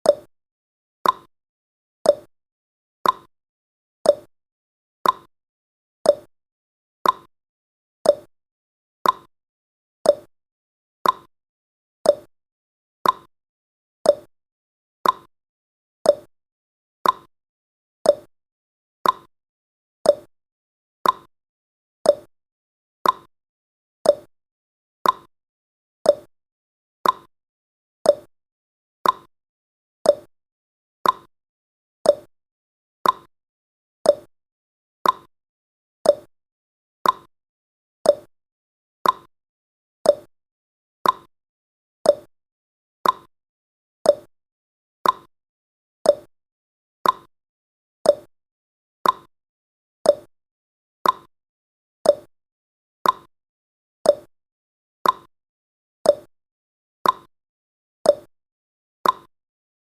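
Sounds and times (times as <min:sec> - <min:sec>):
clock ticking: 0:33.0 - 0:33.3, 0:39.0 - 0:39.3, 0:43.0 - 0:43.3, 0:47.0 - 0:47.3.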